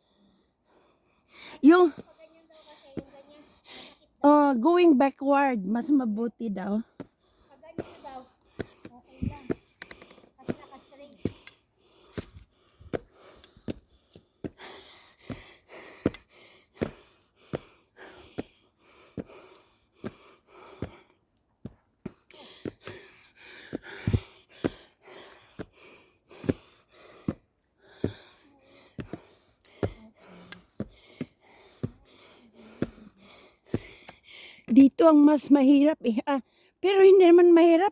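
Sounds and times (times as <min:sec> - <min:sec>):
person breathing: 0:00.0 - 0:04.1, 0:06.9 - 0:21.3, 0:22.1 - 0:34.7
footsteps climbing stairs: 0:07.0 - 0:18.5, 0:21.6 - 0:24.8, 0:25.5 - 0:35.0.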